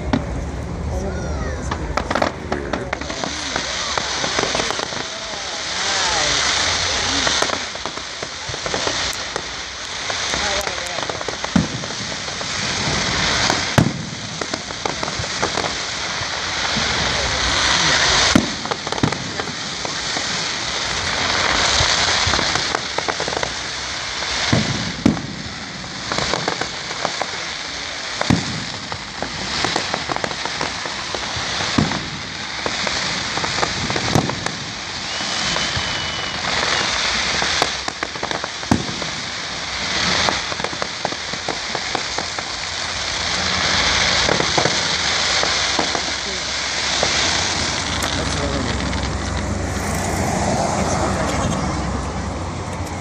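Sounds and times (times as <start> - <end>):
firework whistle: 0.0 - 53.0
fireworks bangs: 0.0 - 53.0
fireworks crackling: 0.0 - 53.0.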